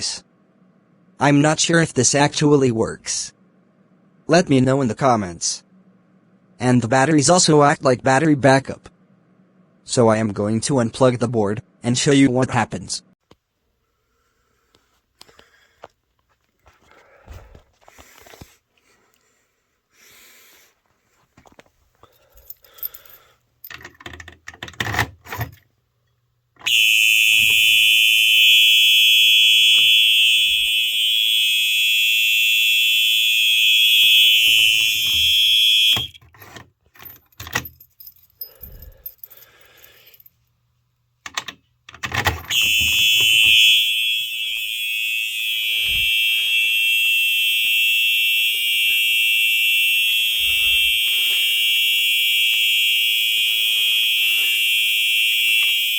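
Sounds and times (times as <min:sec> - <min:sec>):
clicks and knocks from wiring: 0:23.7 - 0:25.7, 0:41.2 - 0:43.6
fire alarm horn tone: 0:26.6 - 0:36.2, 0:42.4 - 0:55.9.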